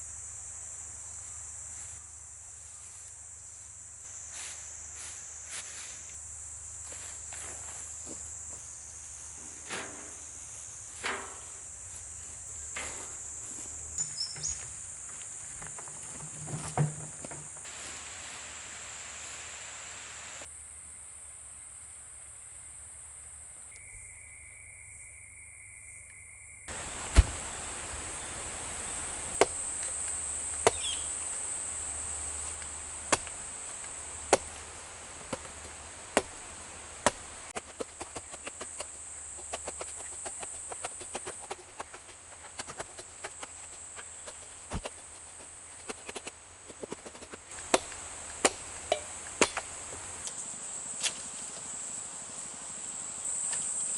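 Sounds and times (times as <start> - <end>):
high-pitched insect drone: 20.1 - 33.0
coconut being chopped: 30.6 - 31.0, 33.1 - 33.4, 34.3 - 34.6, 36.2 - 36.4, 47.6 - 49.7.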